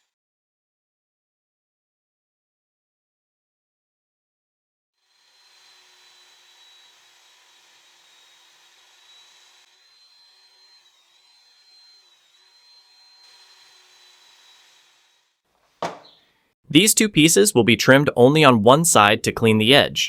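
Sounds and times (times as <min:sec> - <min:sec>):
power saw cutting wood: 0:05.0 - 0:16.2.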